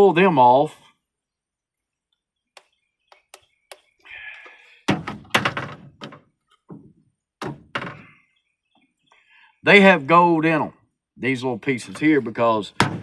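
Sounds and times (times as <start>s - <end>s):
loud knocks: 4.9s - 8.0s, 12.8s - 13.0s.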